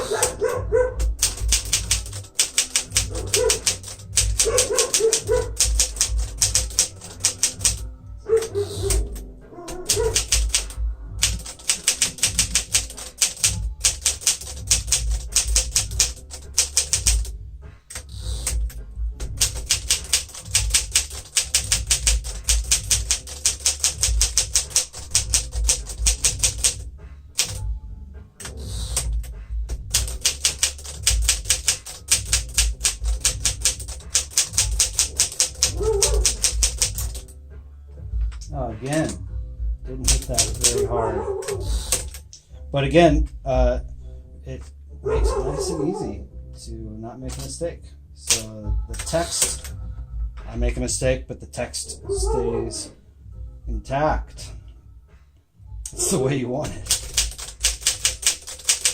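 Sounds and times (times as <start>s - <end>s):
manual typewriter typing: 0.0s - 17.3s, 17.9s - 26.8s, 27.4s - 27.6s, 28.4s - 37.3s, 40.0s - 42.2s, 48.2s - 49.8s, 55.9s - 58.9s.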